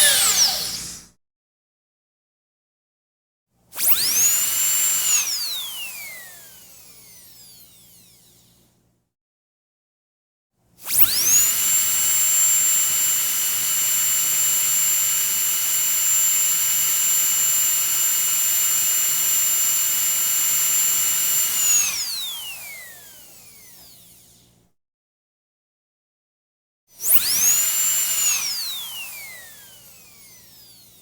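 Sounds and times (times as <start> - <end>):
dentist's drill whining: 0.0 - 1.1, 3.8 - 8.4, 10.9 - 24.4, 27.0 - 31.0.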